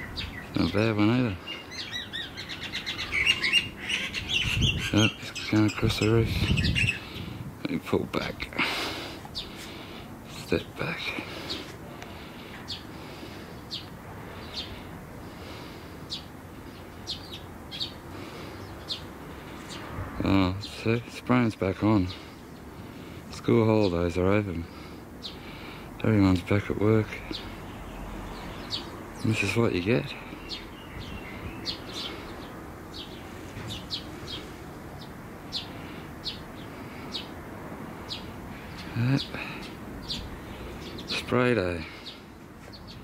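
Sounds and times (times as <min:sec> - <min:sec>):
bird chirping: 0:00.0 - 0:07.4, 0:12.4 - 0:14.9, 0:16.0 - 0:20.0, 0:27.0 - 0:37.4, 0:38.0 - 0:43.0.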